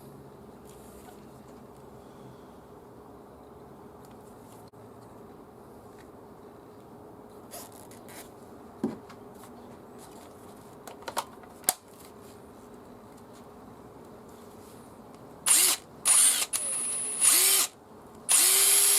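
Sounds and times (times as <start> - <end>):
impact driver motor humming: 15.5 - 17.7, 18.3 - 18.9.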